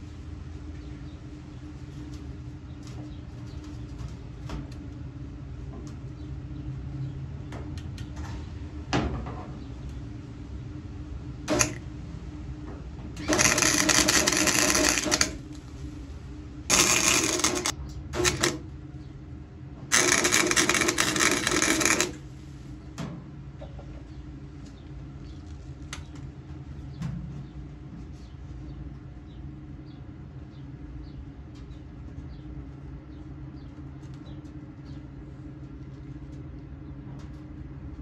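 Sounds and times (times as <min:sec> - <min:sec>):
short welding blips: 0:11.5 - 0:11.8, 0:13.2 - 0:15.4, 0:16.7 - 0:18.6, 0:19.9 - 0:22.2
welder crackling: 0:11.5 - 0:11.8, 0:13.2 - 0:15.5, 0:16.7 - 0:18.6, 0:19.9 - 0:22.2.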